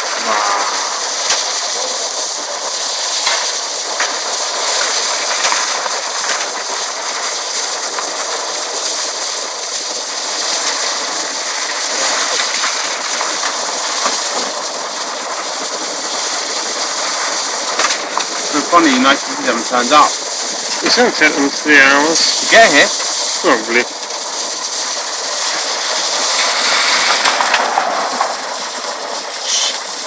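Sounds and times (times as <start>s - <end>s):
water gushing: 0.0s - 30.0s.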